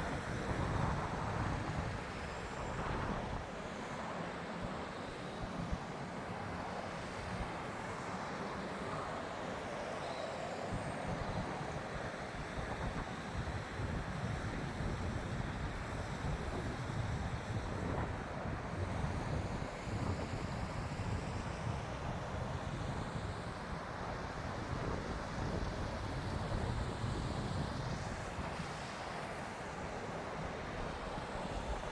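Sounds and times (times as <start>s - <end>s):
wind buffeting microphone: 12.6s - 23.4s.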